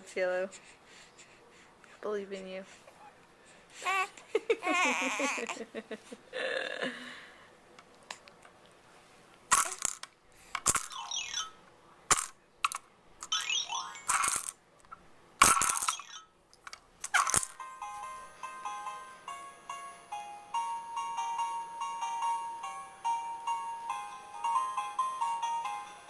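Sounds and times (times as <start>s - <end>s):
toy chirpy electronic sounds: 10.8s - 11.6s, 13.2s - 14.4s, 15.5s - 16.3s.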